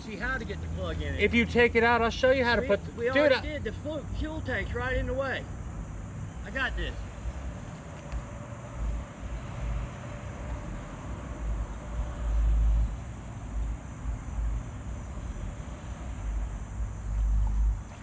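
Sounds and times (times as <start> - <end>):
high insect drone: 0.0 - 18.0.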